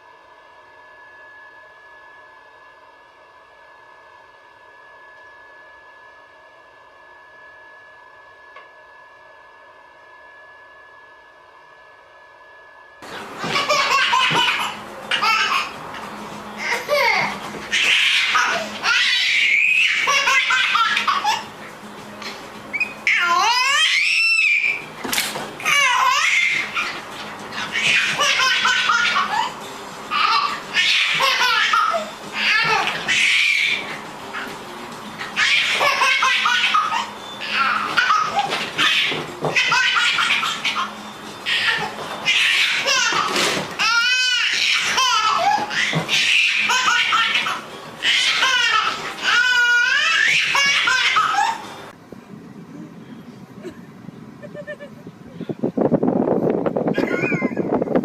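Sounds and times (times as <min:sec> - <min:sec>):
child laughing: 0:13.4 - 0:15.8, 0:19.8 - 0:21.5, 0:27.7 - 0:33.0, 0:35.4 - 0:47.7, 0:48.3 - 0:51.7, 0:53.6 - 0:55.4, 0:56.9 - 0:58.0.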